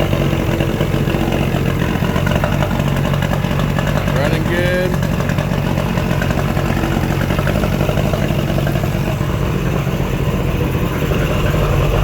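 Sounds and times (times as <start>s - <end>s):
outboard motor running: 0.0s - 12.0s.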